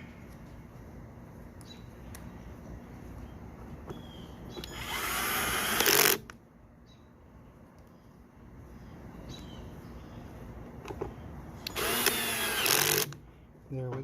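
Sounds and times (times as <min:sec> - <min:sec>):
power drill driving a screw: 0:04.6 - 0:06.3, 0:11.6 - 0:13.2.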